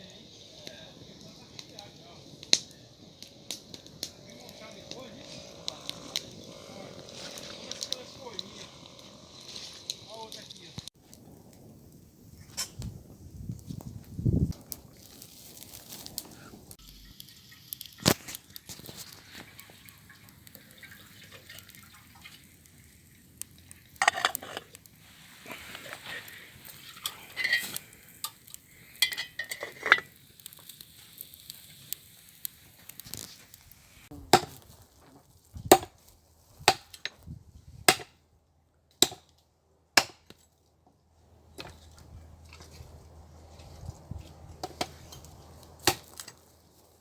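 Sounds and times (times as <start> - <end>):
scraping and rustling: 23.9 - 28.0.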